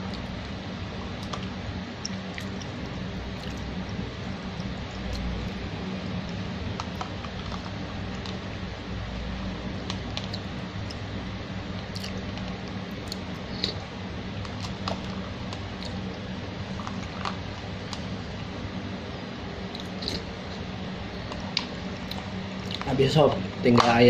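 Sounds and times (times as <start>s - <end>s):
wet squishing and chewing: 0.0s - 8.6s, 9.8s - 11.1s, 11.7s - 13.8s, 14.4s - 18.6s, 19.6s - 20.6s, 21.2s - 23.0s
steady background hum: 0.0s - 24.0s.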